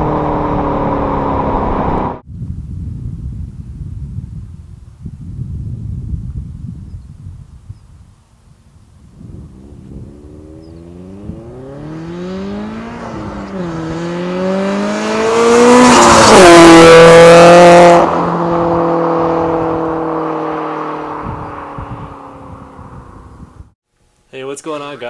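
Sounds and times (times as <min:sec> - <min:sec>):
car engine accelerating past: 0:09.2 - 0:23.6.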